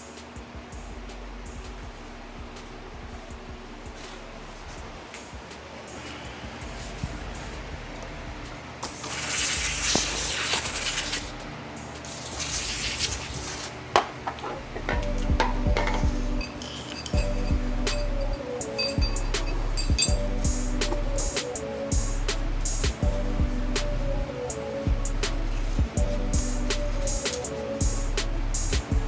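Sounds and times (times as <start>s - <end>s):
music with steady drum beat: 0.0s - 8.8s, 14.8s - 29.0s
aerosol spray hissing: 8.9s - 11.4s.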